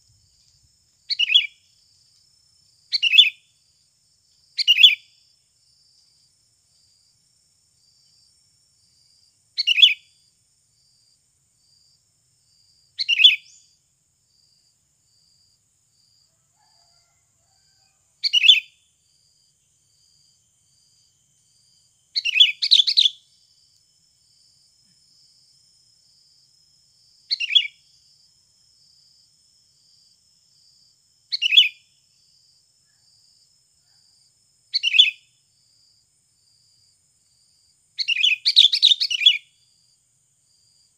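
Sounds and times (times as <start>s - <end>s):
bulbul chirping calls: 1.1s - 1.6s, 2.9s - 3.4s, 4.6s - 5.0s, 13.0s - 13.6s, 18.2s - 18.7s, 22.2s - 23.2s, 27.3s - 27.8s, 31.3s - 31.8s, 38.0s - 39.4s.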